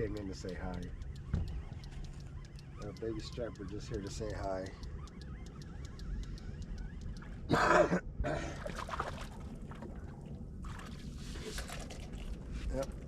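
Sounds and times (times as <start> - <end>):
water splashing and trickling: 8.4 - 13.0.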